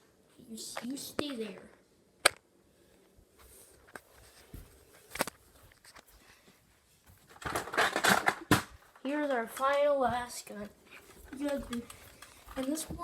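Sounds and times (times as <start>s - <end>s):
faint footsteps: 3.0s - 7.4s, 9.6s - 13.0s
handling noises: 10.9s - 13.0s.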